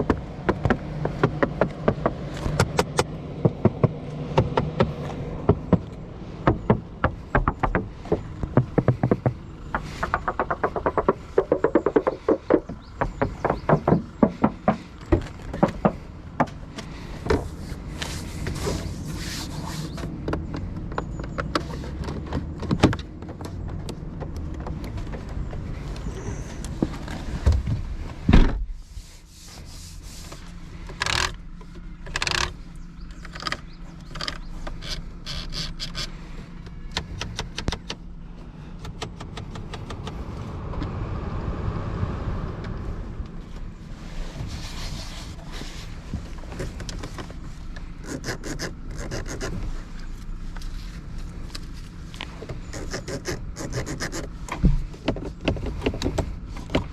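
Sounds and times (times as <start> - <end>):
sharp clicks and knocks: 0.0 - 17.5, 20.0 - 26.0, 30.9 - 38.1, 38.8 - 40.9, 51.5 - 56.9
scraping: 0.0 - 21.1
car engine low hum: 0.0 - 56.9.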